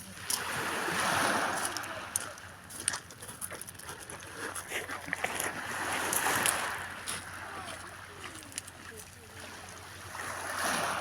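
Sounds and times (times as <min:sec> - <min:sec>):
small waves on stony shore: 0:00.0 - 0:11.0.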